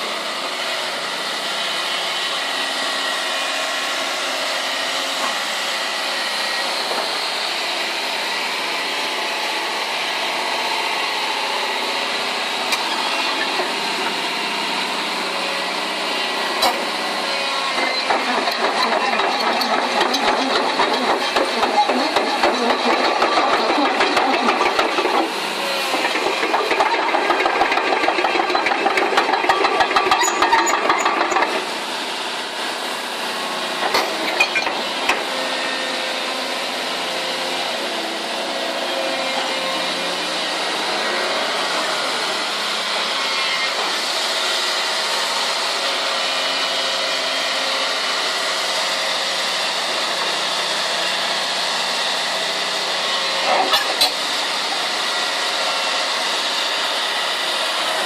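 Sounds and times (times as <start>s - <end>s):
excavator engine running: 11.1s - 58.0s.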